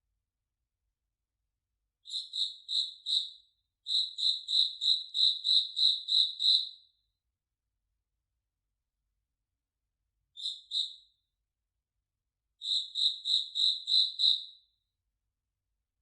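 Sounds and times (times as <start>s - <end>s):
cricket chirping: 12.6s - 14.4s.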